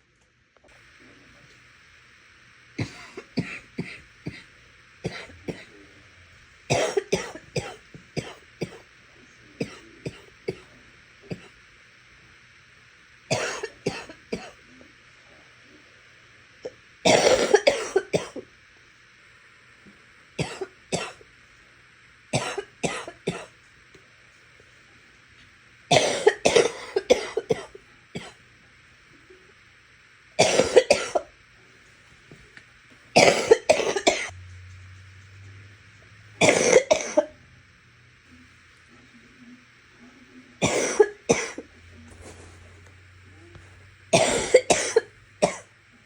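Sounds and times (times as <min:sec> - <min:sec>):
person coughing wetly: 0:02.8 - 0:05.7, 0:06.7 - 0:08.9, 0:09.6 - 0:10.7, 0:11.3 - 0:11.6, 0:13.3 - 0:14.6, 0:17.0 - 0:18.4, 0:20.4 - 0:21.2, 0:22.4 - 0:23.5, 0:25.9 - 0:28.4, 0:30.4 - 0:31.3, 0:33.2 - 0:34.3, 0:36.4 - 0:37.3, 0:40.6 - 0:41.7, 0:44.1 - 0:45.7.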